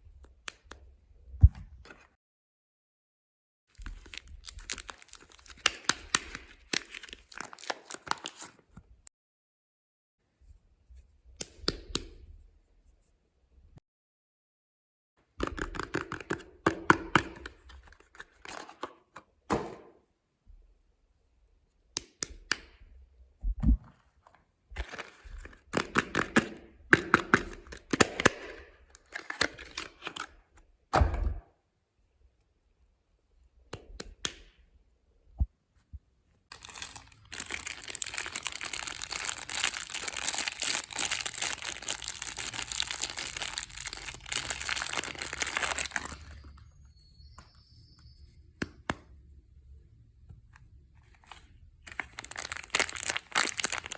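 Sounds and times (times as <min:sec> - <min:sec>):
packaging tearing and crinkling: 0:03.8 - 0:08.6, 0:36.5 - 0:46.4, 0:51.9 - 0:53.9.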